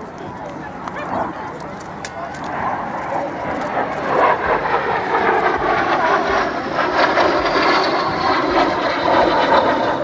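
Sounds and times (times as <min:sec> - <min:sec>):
airplane engine running: 0:01.4 - 0:10.0
high whine falling in pitch: 0:04.4 - 0:10.0.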